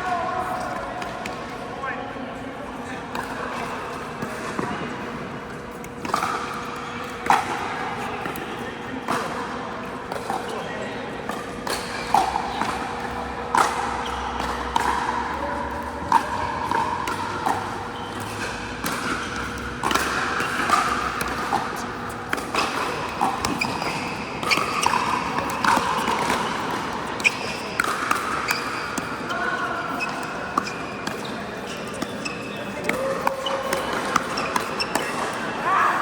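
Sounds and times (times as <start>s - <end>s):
ball bouncing on court: 11.6s - 35.3s
paddles hitting ball: 16.1s - 29.2s.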